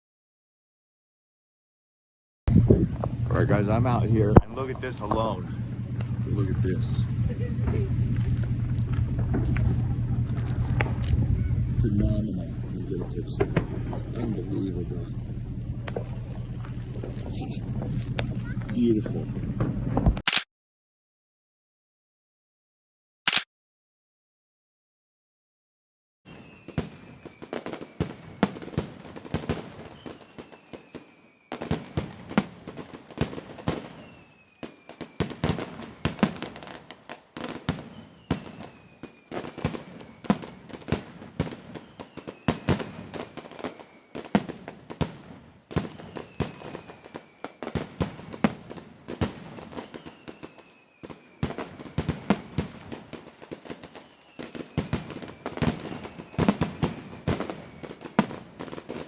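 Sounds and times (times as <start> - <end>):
fireworks bangs and crackling: 2.5 - 20.2, 26.3 - 59.0
faint falling whistle: 26.3 - 28.6, 29.9 - 31.6, 33.9 - 36.2, 37.7 - 40.6, 41.7 - 44.3, 45.9 - 47.6, 49.6 - 52.7, 53.8 - 58.1.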